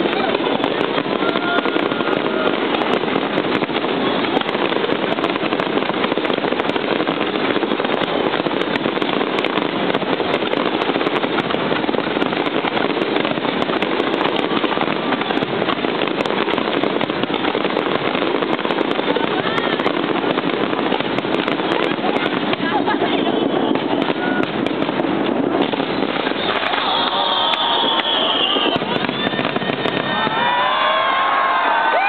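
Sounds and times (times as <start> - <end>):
fireworks bursting and crackling: 0.0 - 32.0.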